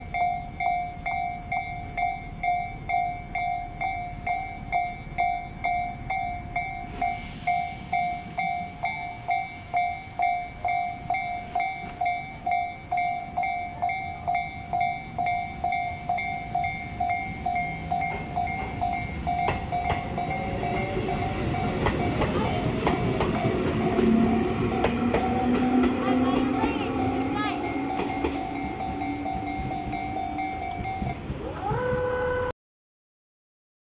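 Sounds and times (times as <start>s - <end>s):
level-crossing warning bell: 0.0s - 32.5s
train wheels clattering: 15.7s - 31.3s.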